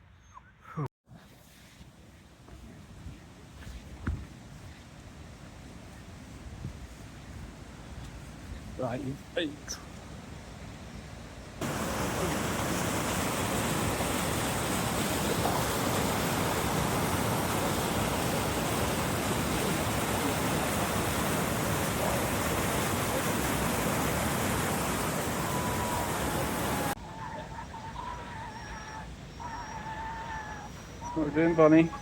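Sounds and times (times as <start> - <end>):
waterfall rushing: 11.6 - 27.0.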